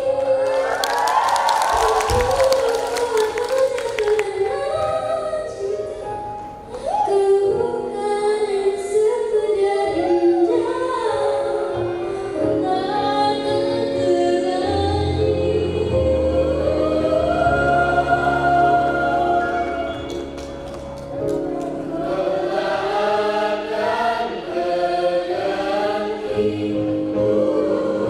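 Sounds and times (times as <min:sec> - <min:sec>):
choir singing: 0:10.1 - 0:20.6, 0:21.4 - 0:28.0.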